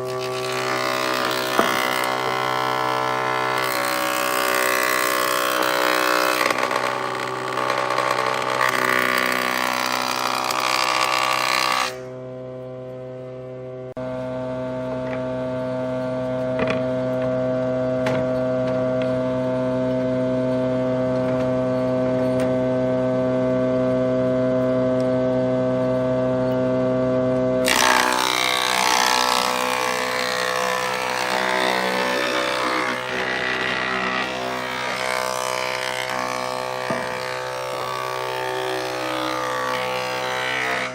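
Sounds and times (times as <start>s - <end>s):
table saw motor humming: 0.0s - 12.2s, 27.6s - 40.9s.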